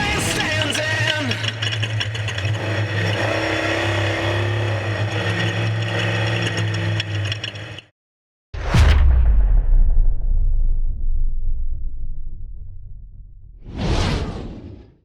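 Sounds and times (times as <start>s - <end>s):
race vehicle engine whining: 0.0s - 7.9s.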